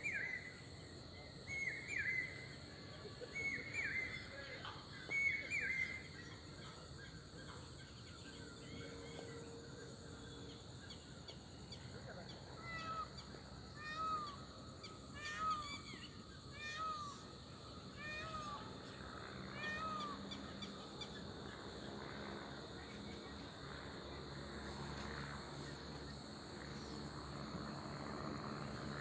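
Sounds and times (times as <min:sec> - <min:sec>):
insects chirping: 0:00.0 - 0:29.0
animal calling: 0:12.3 - 0:13.2, 0:17.9 - 0:20.6.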